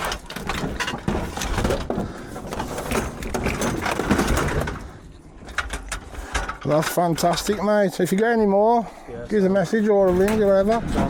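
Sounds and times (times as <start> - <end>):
scrap knocking and clattering: 0.0 - 7.7.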